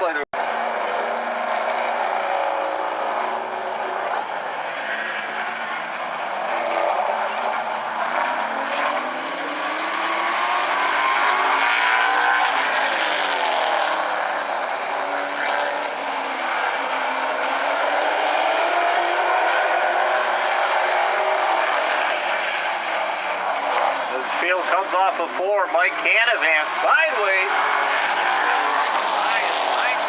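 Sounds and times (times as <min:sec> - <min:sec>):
race car engines passing: 0:00.0 - 0:30.0.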